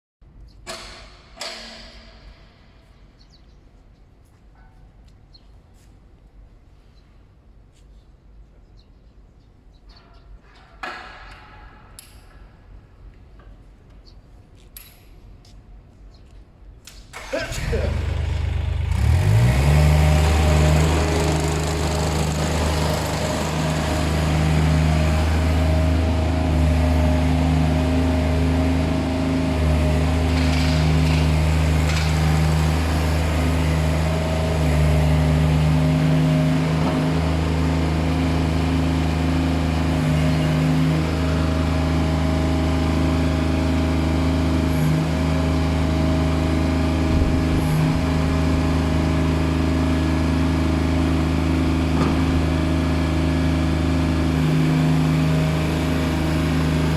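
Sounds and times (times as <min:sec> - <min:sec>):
bulldozer diesel engine running: 0:17.2 - 0:56.9.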